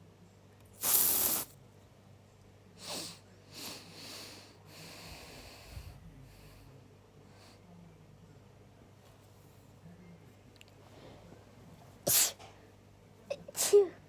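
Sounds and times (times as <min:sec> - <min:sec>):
aerosol spray hiss: 0:00.8 - 0:01.5
person sniffing: 0:00.8 - 0:01.5.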